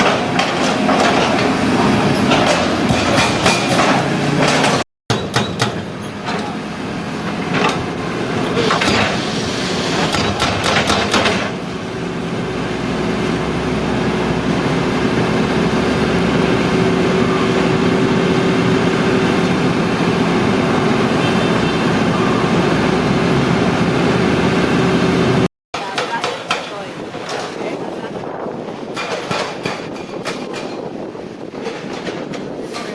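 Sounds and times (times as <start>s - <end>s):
heavy engine drone with whine: 0.0s - 25.5s
hydraulic breaker knocking: 2.3s - 6.6s, 10.0s - 11.6s.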